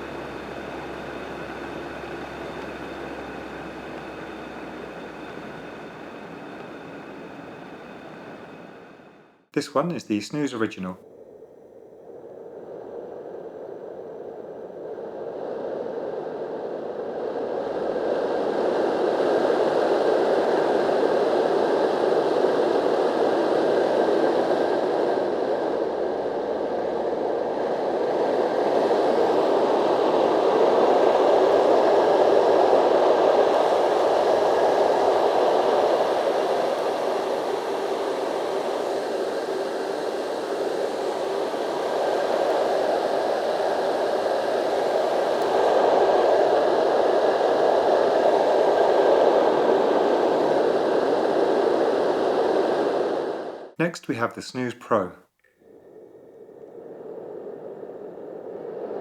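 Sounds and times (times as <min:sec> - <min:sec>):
white noise machine fan rush: 0:00.0 - 0:09.4, 0:11.2 - 0:53.7
faint steady tone: 0:00.0 - 0:14.4.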